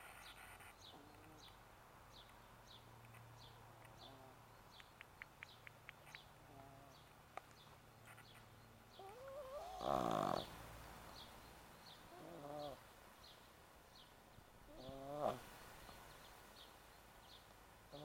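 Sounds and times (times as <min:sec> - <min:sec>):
dog snoring with whistling breaths: 0:09.2 - 0:10.5.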